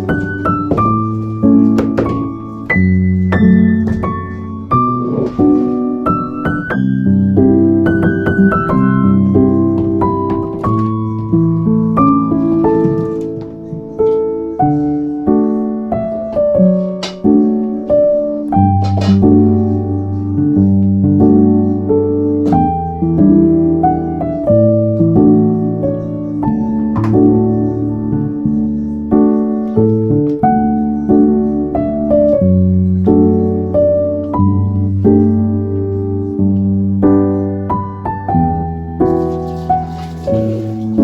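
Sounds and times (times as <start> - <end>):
slow gentle piano melody: 0.0 - 41.0.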